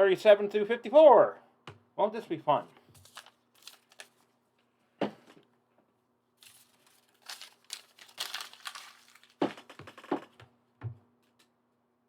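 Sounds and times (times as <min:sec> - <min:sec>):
plastic bags crinkling: 0:02.9 - 0:04.4, 0:06.4 - 0:09.9.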